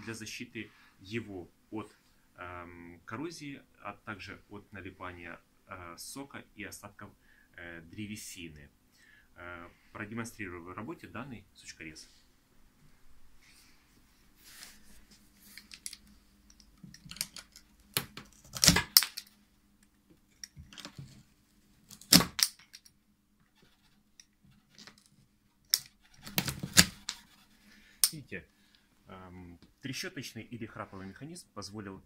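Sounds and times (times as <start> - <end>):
wood cracking: 16.9 - 19.3, 21.9 - 22.7, 25.7 - 27.2.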